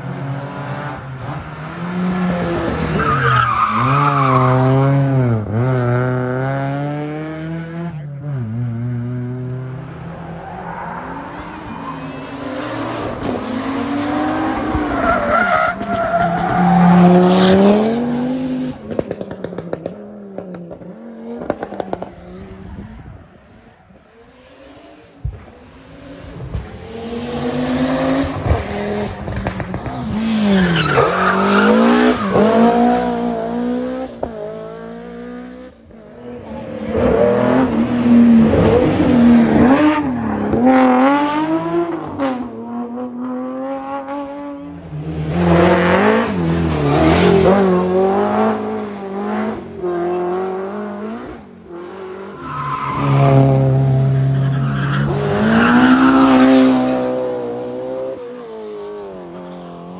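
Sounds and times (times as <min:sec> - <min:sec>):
rally car engines revving: 0:00.0 - 0:59.9
tyres skidding: 0:01.0 - 0:05.8, 0:09.4 - 0:19.8, 0:24.7 - 0:34.5, 0:52.0 - 0:58.1.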